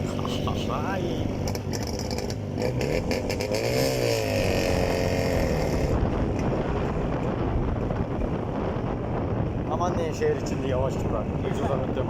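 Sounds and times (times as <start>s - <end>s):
motorcycle engine running: 0.0s - 9.7s
wind and road noise: 0.0s - 12.0s.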